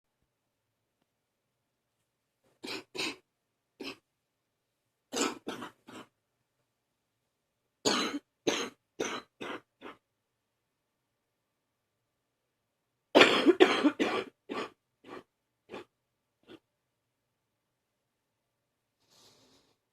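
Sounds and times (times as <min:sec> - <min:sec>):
person coughing deeply: 0:05.1 - 0:06.1, 0:07.9 - 0:10.0, 0:13.2 - 0:15.9.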